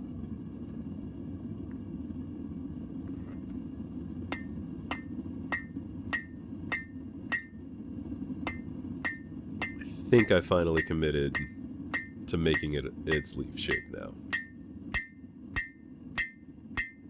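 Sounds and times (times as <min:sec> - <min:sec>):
hammer striking steel on anvil: 0:04.3 - 0:07.6, 0:08.4 - 0:17.0.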